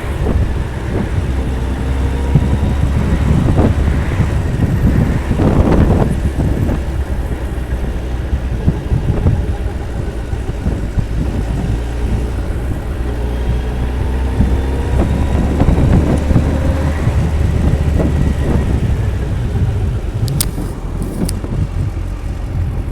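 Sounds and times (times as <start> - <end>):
motorcycle engine revving: 0.0 - 22.9
light engine clicking: 19.6 - 22.5.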